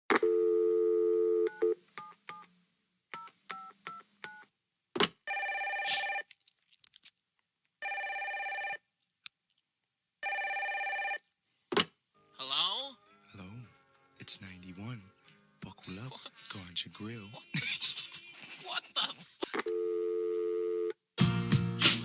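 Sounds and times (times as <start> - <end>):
telephone ringing tone: 0.1 - 1.8, 5.3 - 6.2, 7.8 - 8.8, 10.2 - 11.2, 19.7 - 21.0
telephone dial tone: 0.1 - 2.4, 5.3 - 6.2, 7.8 - 8.8, 10.2 - 11.2, 19.6 - 21.0.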